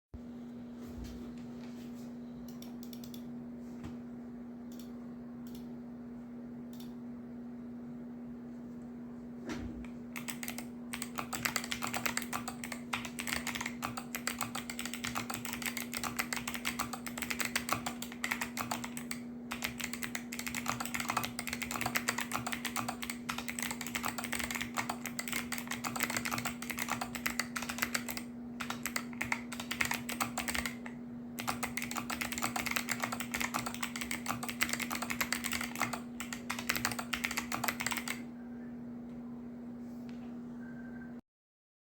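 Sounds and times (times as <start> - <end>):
steady low hum: 0.2 - 41.2
mechanical keyboard typing clicks: 10.2 - 38.2.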